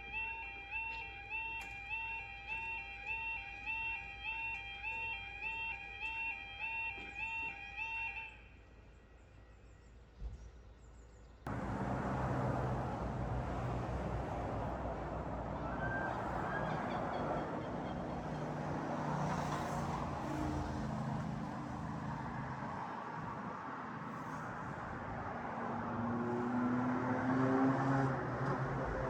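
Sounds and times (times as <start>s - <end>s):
vehicle engine hum: 11.5s - 29.0s.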